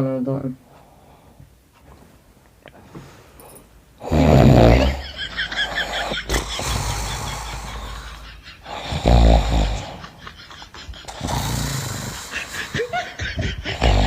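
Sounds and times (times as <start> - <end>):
man fake snoring: 4.0 - 10.2, 11.0 - 14.0.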